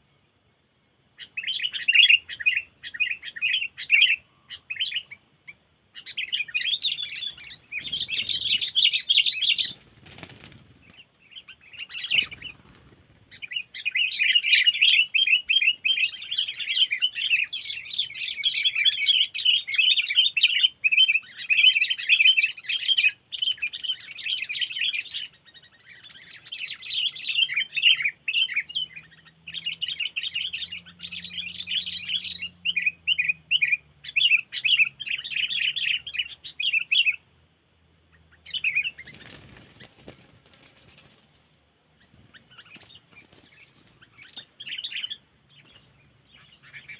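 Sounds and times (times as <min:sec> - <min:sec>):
bird chattering chirps: 0:06.0 - 0:37.2, 0:38.1 - 0:40.9, 0:42.0 - 0:46.9
low wing flutter: 0:09.5 - 0:11.1, 0:39.0 - 0:41.5.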